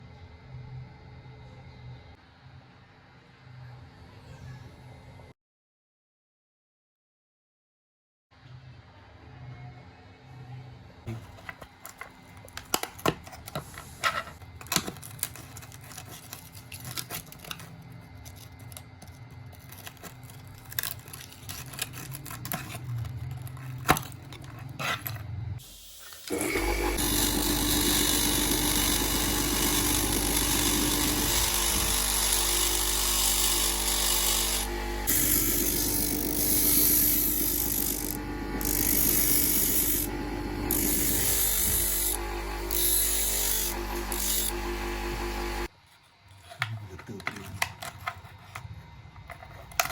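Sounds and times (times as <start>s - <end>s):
power tool running: 25.6s - 45.7s.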